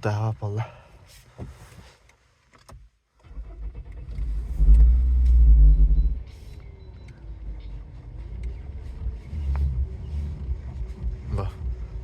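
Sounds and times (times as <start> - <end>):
car engine starting: 3.1 - 12.0.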